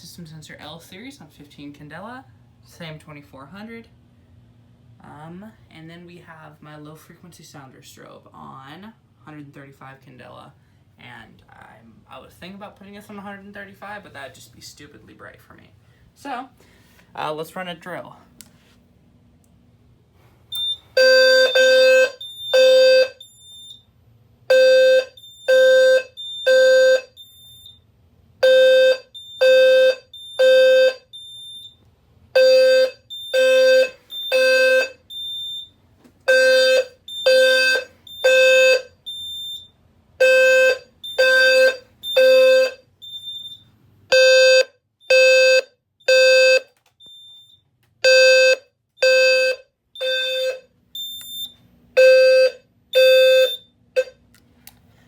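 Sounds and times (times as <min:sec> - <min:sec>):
low buzzy fire alarm blasts: 0:20.5 - 0:54.2.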